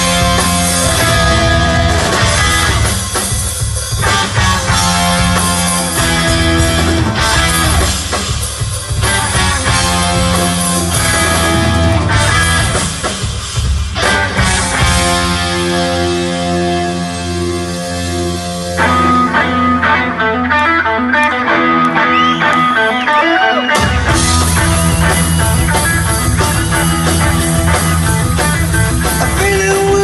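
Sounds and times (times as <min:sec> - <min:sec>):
bass guitar: 0:00.0 - 0:30.0
distorted electric guitar: 0:00.0 - 0:30.0
drum kit: 0:00.0 - 0:30.0.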